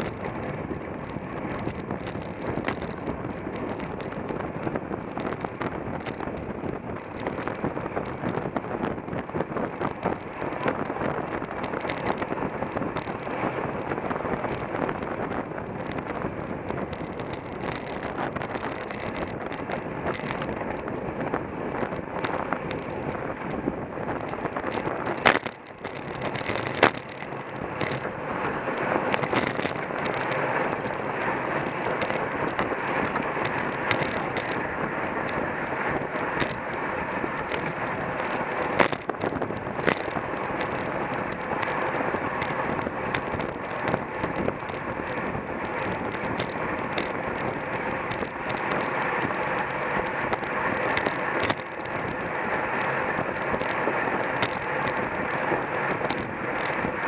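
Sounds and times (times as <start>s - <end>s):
bicycle tyre noise: 0.0s - 57.0s
wind rush: 0.0s - 57.0s.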